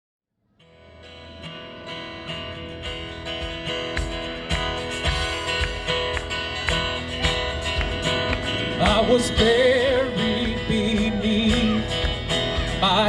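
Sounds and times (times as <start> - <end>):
strummed guitar: 0.6 - 13.0
heavy low beats: 2.8 - 13.0.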